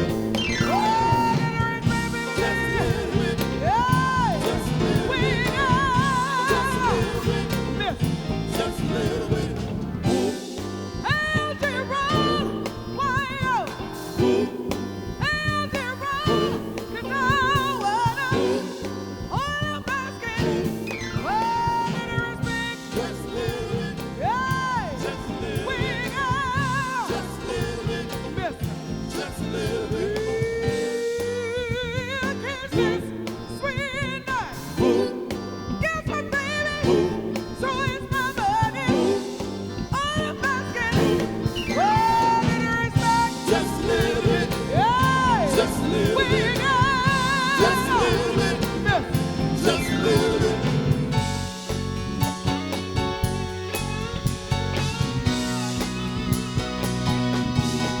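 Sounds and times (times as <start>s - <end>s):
live soul band playing: 0.0s - 58.0s
lead melody with wide vibrato: 32.6s - 58.0s.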